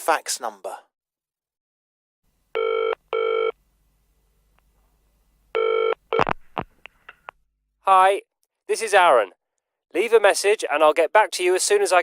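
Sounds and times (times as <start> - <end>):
telephone ringing: 2.6 - 3.6, 5.6 - 6.3.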